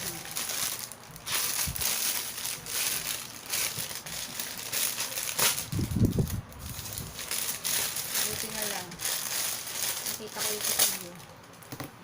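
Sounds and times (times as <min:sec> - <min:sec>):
plastic pouch crinkling: 0:00.0 - 0:11.5.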